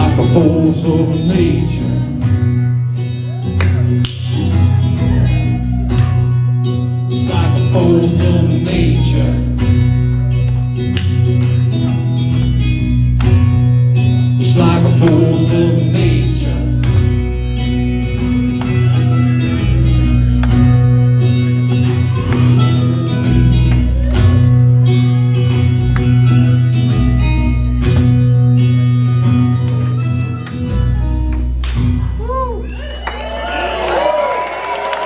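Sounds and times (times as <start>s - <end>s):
acoustic guitar: 0.0s - 32.4s
low bass line: 0.0s - 32.8s
harmonica: 11.8s - 32.6s.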